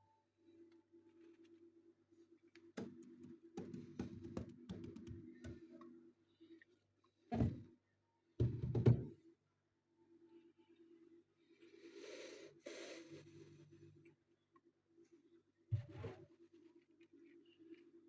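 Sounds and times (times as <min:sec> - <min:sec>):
washing machine hum: 0:02.7 - 0:06.0.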